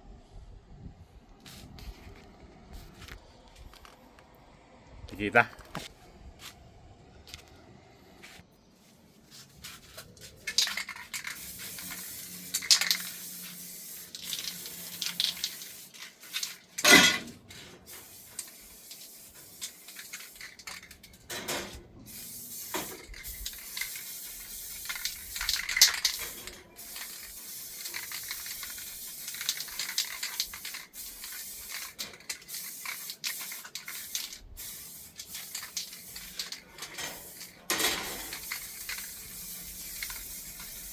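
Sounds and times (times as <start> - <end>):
steady hiss: 9.4 - 40.9
aluminium parts clinking and knocking: 19.4 - 21.8, 22.6 - 40.9.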